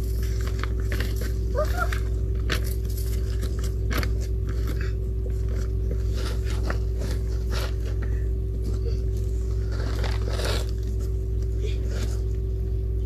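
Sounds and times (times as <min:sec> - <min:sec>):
hands scraping through soil: 0:00.0 - 0:08.1, 0:09.2 - 0:11.1
steady low hum: 0:00.0 - 0:13.0.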